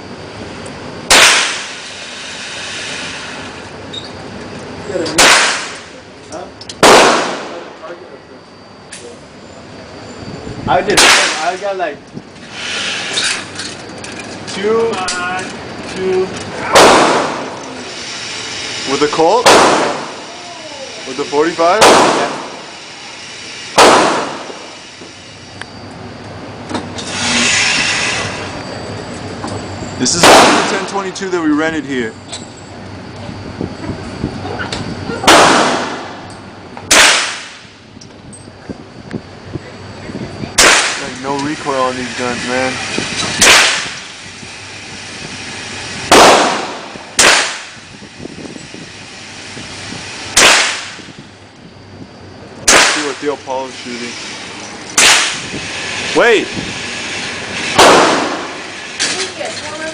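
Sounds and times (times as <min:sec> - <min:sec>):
pistol shot echoing: 0:01.1 - 0:01.8, 0:06.8 - 0:07.6, 0:16.7 - 0:17.5, 0:19.4 - 0:20.2, 0:21.8 - 0:22.6, 0:23.8 - 0:24.6, 0:30.2 - 0:30.8, 0:35.3 - 0:36.1, 0:36.9 - 0:37.6, 0:46.1 - 0:47.7, 0:50.4 - 0:51.0, 0:52.7 - 0:53.2, 0:57.8 - 0:58.6.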